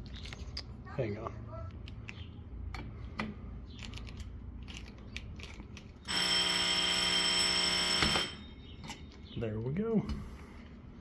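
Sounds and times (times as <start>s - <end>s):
fire alarm bell ringing: 6.1s - 8.5s.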